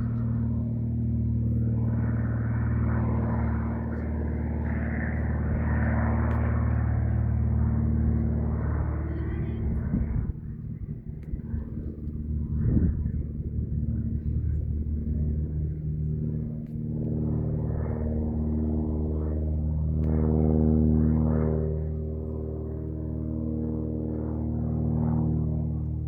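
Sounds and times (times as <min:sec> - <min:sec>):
light aircraft engine and propeller: 0:00.0 - 0:26.0.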